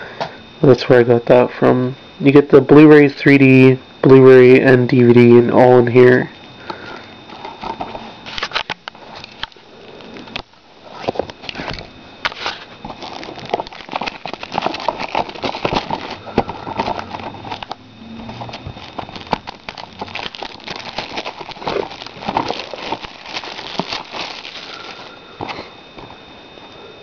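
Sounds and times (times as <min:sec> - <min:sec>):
plastic packaging crinkling: 0:06.8 - 0:25.6.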